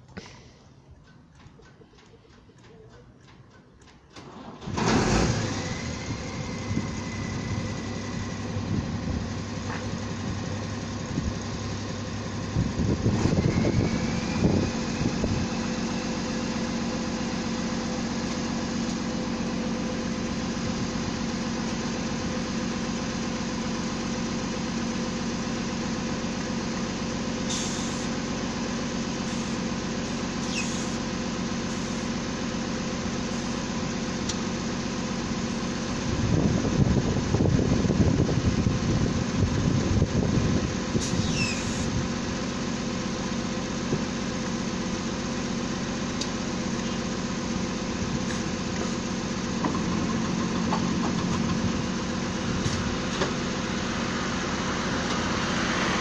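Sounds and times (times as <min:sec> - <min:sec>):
engine knocks: 0:00.9 - 0:26.2, 0:35.2 - 0:54.0
drilling rig engine running: 0:04.4 - 0:56.0.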